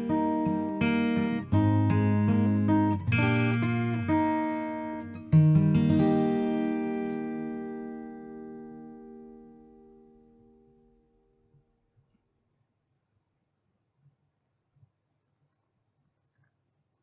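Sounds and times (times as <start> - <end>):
acoustic guitar picking: 0.0 - 10.9.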